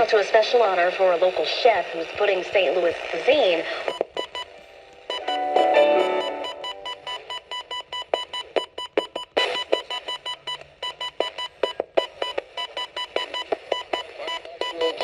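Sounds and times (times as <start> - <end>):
high pulsing alert beeps: 3.9 - 15.0.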